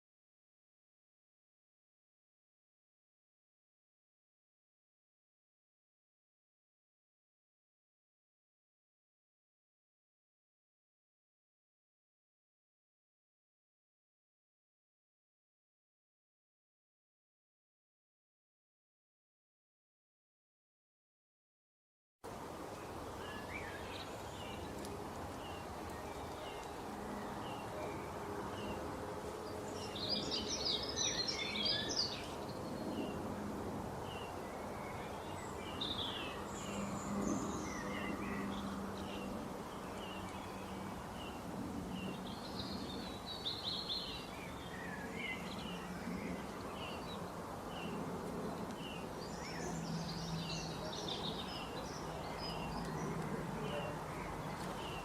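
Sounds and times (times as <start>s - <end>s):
steady background noise: 22.3s - 55.0s
small birds chirping: 22.6s - 33.3s, 34.0s - 55.0s.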